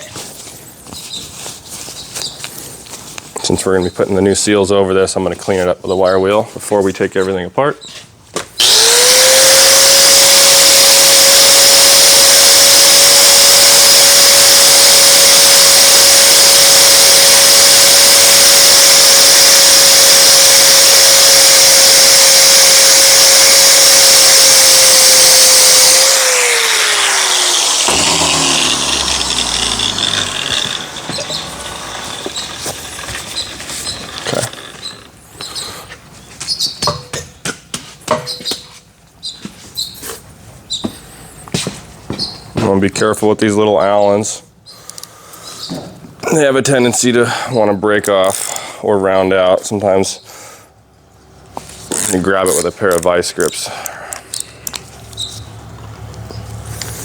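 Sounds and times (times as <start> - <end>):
motor spinning down: 8.6 - 35.2
wire wheel grinding metal: 8.6 - 35.4.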